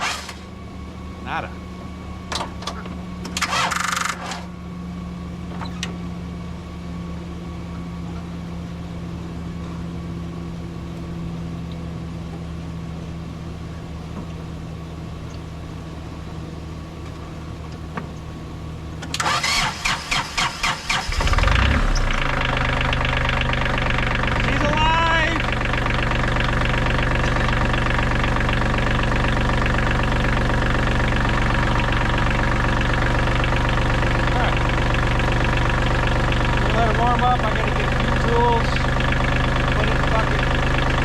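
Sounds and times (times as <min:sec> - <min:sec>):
tractor engine cranking and running: 0:00.0 - 0:00.8, 0:02.2 - 0:04.6, 0:17.0 - 0:41.0
low engine hum: 0:00.0 - 0:41.0.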